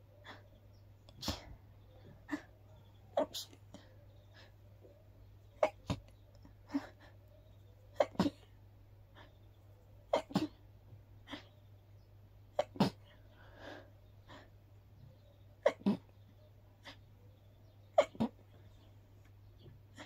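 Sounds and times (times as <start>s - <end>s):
soft breaths: 0.0s - 10.0s, 13.0s - 15.5s
person sneezing: 1.2s - 1.6s.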